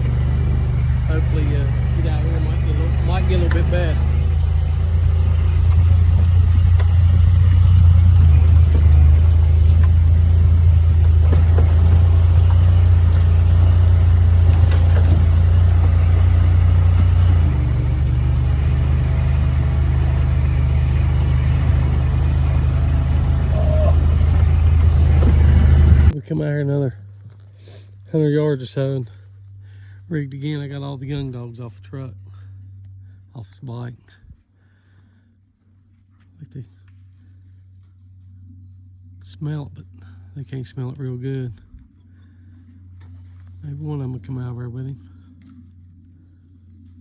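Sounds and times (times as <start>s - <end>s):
road noise: 0.0s - 26.8s
vehicle engine droning: 0.0s - 27.1s, 27.8s - 35.3s, 36.5s - 47.0s.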